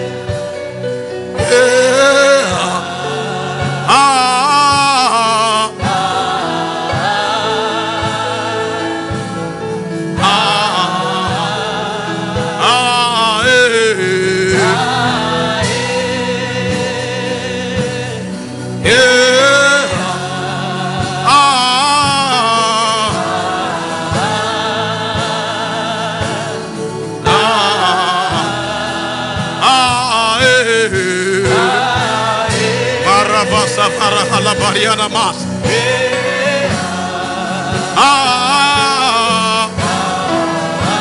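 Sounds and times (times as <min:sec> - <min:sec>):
steady beat: 0:12.6 - 0:41.0.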